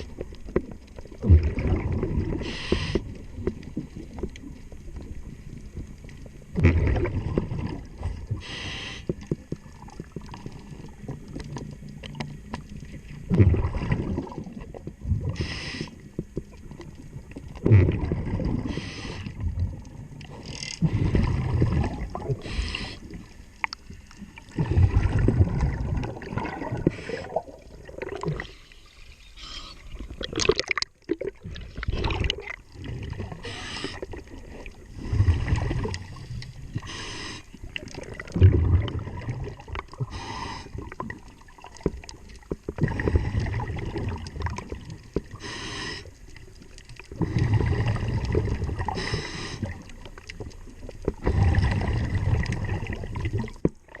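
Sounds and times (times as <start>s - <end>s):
exhaled bubbles rumbling: 0.0s - 8.6s, 9.3s - 54.0s
hissing regulator inhalations: 2.4s - 3.1s, 8.4s - 9.2s, 15.4s - 16.0s, 18.7s - 19.3s, 22.4s - 23.2s, 29.4s - 29.9s, 33.4s - 34.1s, 36.8s - 37.6s, 40.1s - 40.8s, 45.4s - 46.2s, 48.9s - 49.8s.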